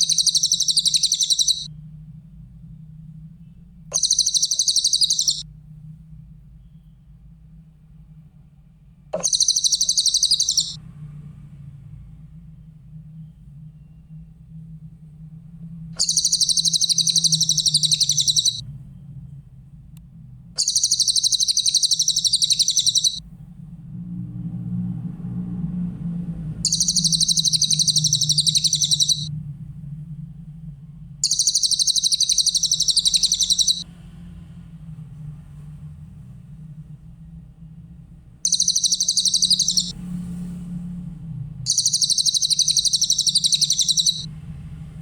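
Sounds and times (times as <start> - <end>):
bird singing high trills: 0.0 - 1.7, 3.9 - 5.4, 9.2 - 10.8, 16.0 - 18.6, 20.6 - 23.2, 26.7 - 29.3, 31.2 - 33.9, 38.5 - 40.0, 41.7 - 44.3
steady low hum: 0.0 - 11.0, 11.9 - 24.1, 25.7 - 35.2, 36.0 - 45.0.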